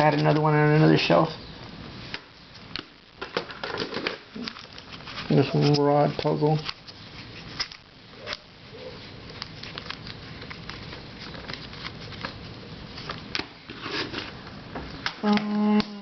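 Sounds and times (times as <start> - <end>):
faint steady hiss: 0.0 - 16.0.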